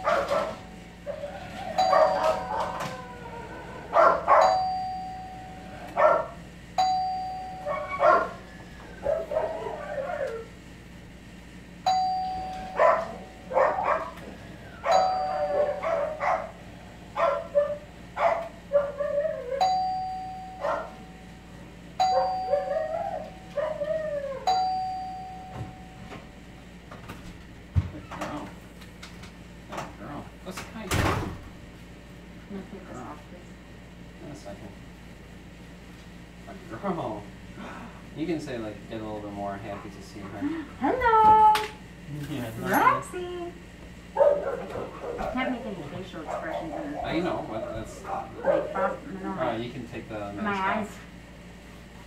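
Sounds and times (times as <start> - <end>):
dog barking: 0.0 - 3.0, 3.9 - 4.6, 5.9 - 6.4, 7.6 - 8.4, 9.0 - 10.4, 12.7 - 14.2, 14.8 - 19.6, 20.6 - 21.0, 22.1 - 23.9, 44.2 - 45.6, 46.2 - 49.1
doorbell chime: 1.8 - 2.5, 4.4 - 5.7, 6.8 - 7.7, 11.8 - 13.5, 14.9 - 15.7, 19.6 - 21.2, 22.0 - 23.5, 24.5 - 26.2.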